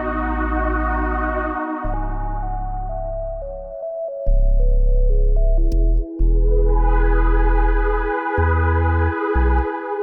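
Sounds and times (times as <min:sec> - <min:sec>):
steady bass: 0:00.0 - 0:10.0
synthesizer held notes: 0:04.4 - 0:10.0.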